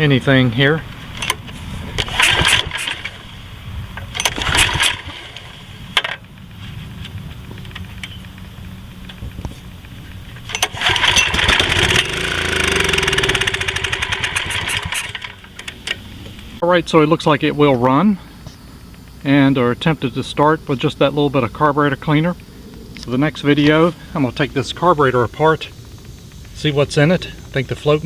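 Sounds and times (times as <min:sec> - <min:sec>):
recoil starter pulls: 0:00.0 - 0:17.3, 0:18.4 - 0:28.0
small engine running: 0:01.1 - 0:16.6, 0:23.8 - 0:28.0.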